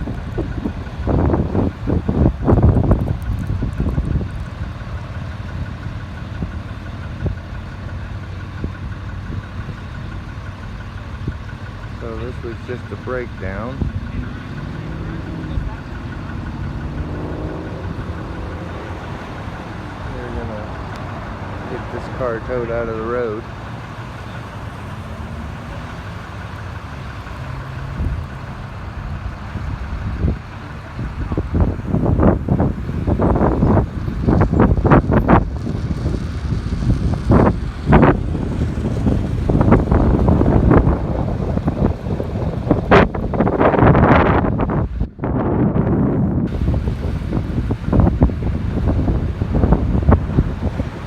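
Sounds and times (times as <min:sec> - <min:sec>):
wind on microphone: 0:00.0 - 0:04.6, 0:29.2 - 0:51.0
vehicle engine idling: 0:00.0 - 0:51.0.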